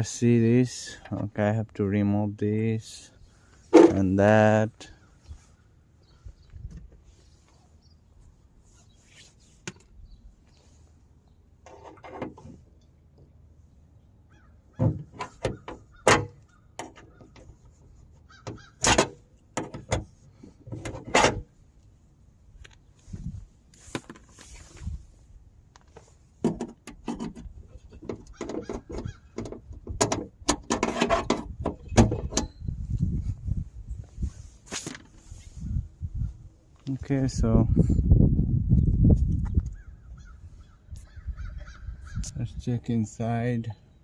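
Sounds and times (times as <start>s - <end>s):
plastic creaking and scraping: 11.6s - 12.6s, 18.4s - 21.4s, 25.8s - 32.6s.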